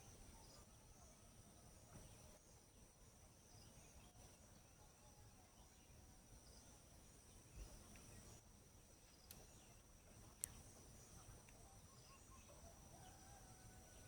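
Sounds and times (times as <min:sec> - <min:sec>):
faint clicks: 0:09.2 - 0:09.5, 0:10.3 - 0:10.7.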